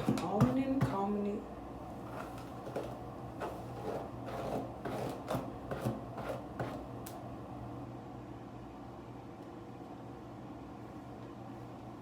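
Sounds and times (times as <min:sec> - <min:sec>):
comb scraping through hair: 0:02.0 - 0:06.8.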